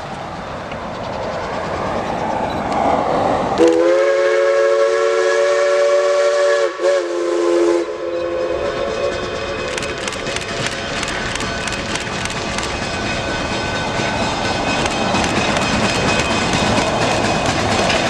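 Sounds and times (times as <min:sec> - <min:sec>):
passing train hiss and rumble: 0:00.0 - 0:18.0
steam locomotive chime whistle: 0:03.6 - 0:10.1, 0:10.9 - 0:18.0.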